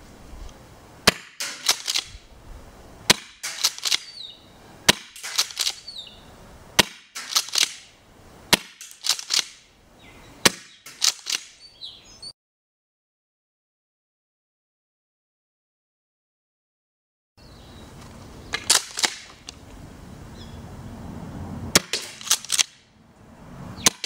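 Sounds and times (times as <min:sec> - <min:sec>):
airsoft shotgun firing: 0:01.0 - 0:02.2, 0:03.1 - 0:04.1, 0:04.9 - 0:05.8, 0:06.8 - 0:07.9, 0:08.5 - 0:09.6, 0:10.4 - 0:11.6, 0:21.7 - 0:22.8
shotgun slide pumping clacks: 0:01.4 - 0:02.2, 0:03.1 - 0:04.2, 0:04.9 - 0:05.9, 0:07.1 - 0:07.9, 0:08.6 - 0:09.6, 0:10.8 - 0:11.6, 0:18.6 - 0:19.6, 0:21.8 - 0:22.8.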